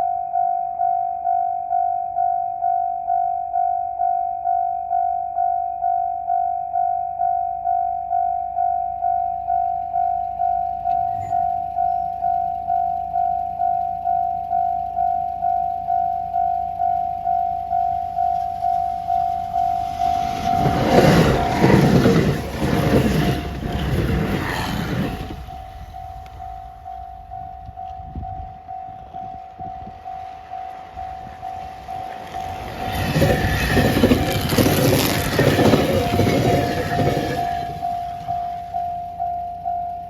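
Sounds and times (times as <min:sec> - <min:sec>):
level-crossing bell dinging: 0:00.0 - 0:40.0
train rumble and wheel clatter: 0:10.8 - 0:40.0.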